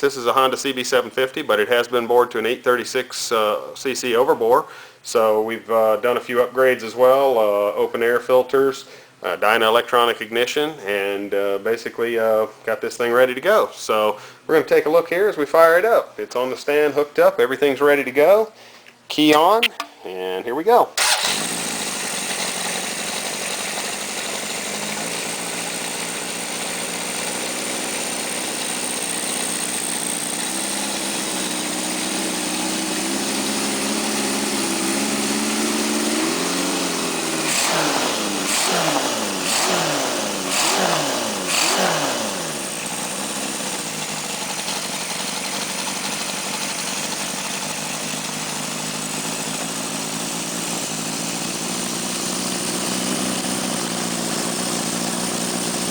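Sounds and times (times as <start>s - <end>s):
motorcycle engine idling and revving: 21.0s - 55.9s.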